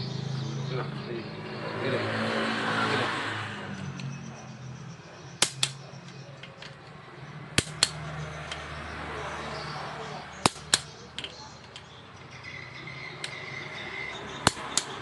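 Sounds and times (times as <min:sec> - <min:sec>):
rushing vehicle noise: 0:00.0 - 0:15.0
metallic clicks of hand tools: 0:05.4 - 0:06.9, 0:07.6 - 0:08.7, 0:10.4 - 0:11.9, 0:14.4 - 0:15.0.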